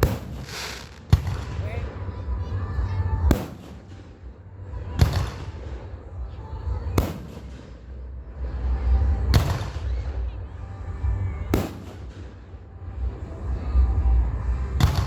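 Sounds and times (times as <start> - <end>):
loud bangs with echo: 0.0 - 1.9, 3.3 - 4.2, 6.9 - 7.9, 11.5 - 12.5
steady low rumble: 0.0 - 15.0.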